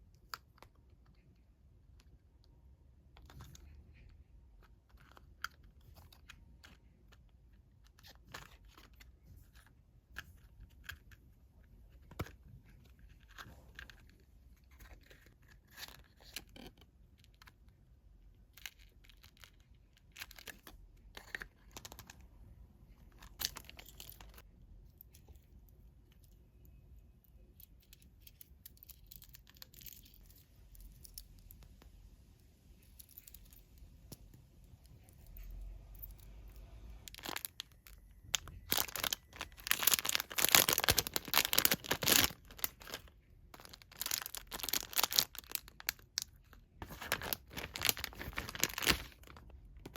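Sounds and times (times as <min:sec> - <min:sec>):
plastic packaging crinkling and tearing: 0:37.0 - 0:49.9.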